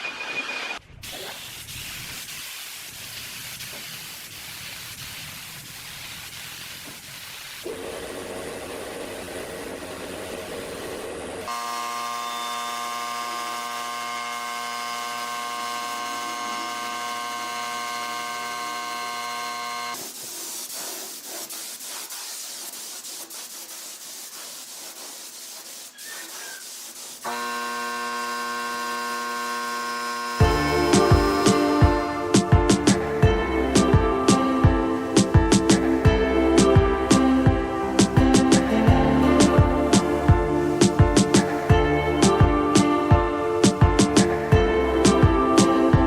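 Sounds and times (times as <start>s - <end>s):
hissing noise: 0.9s - 11.5s, 19.9s - 27.8s, 30.3s - 46.0s
power tool whining: 11.5s - 20.0s, 27.2s - 32.7s.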